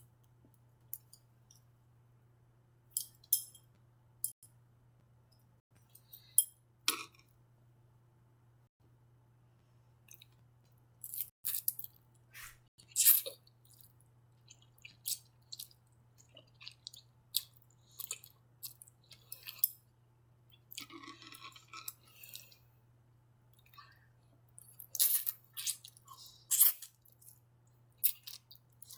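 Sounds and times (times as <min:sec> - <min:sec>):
chewing: 0:12.4 - 0:19.6, 0:20.5 - 0:22.6, 0:23.6 - 0:28.9.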